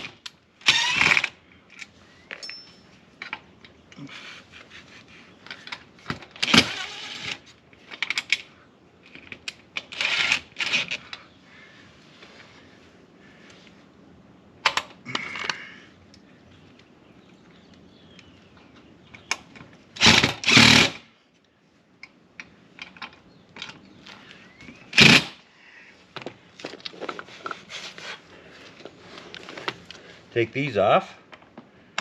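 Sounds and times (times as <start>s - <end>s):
power drill bursts: 0.6s - 1.3s, 6.4s - 7.4s, 20.0s - 21.1s, 24.9s - 25.4s.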